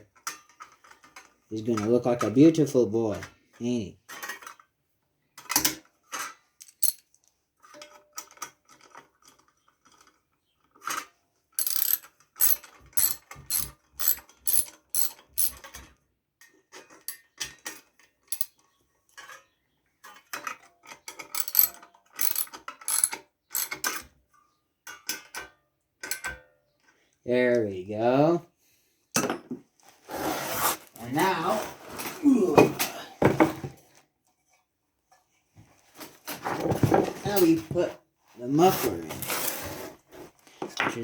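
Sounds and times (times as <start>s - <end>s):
ratchet wrench clicking: 11.6s - 15.5s, 21.4s - 23.8s.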